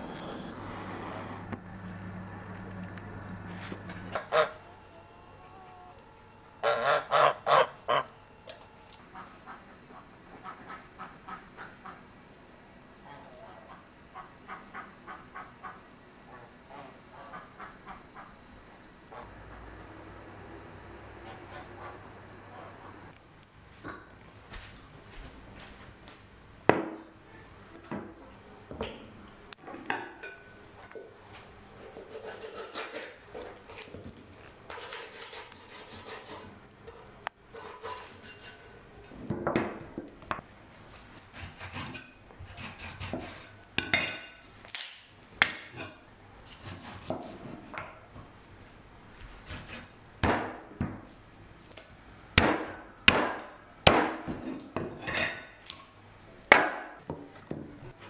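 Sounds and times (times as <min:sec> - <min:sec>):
cookware and utensils clattering: 0:29.6 - 0:31.1, 0:36.2 - 0:40.1, 0:41.8 - 0:44.4, 0:54.1 - 0:55.6.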